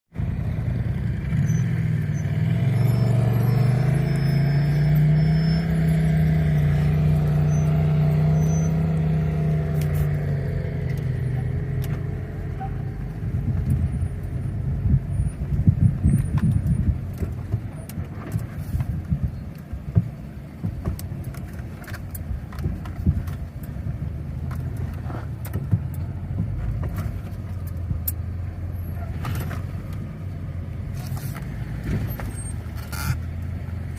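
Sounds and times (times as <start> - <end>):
truck engine running at low revs: 0.1 - 33.9
tyres knocking and scraping over rock: 13.4 - 28.2.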